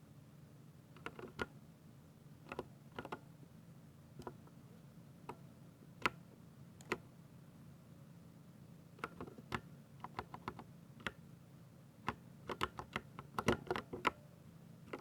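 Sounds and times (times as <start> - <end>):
mechanical keyboard typing: 1.0 - 1.5, 9.0 - 11.2, 12.1 - 14.2.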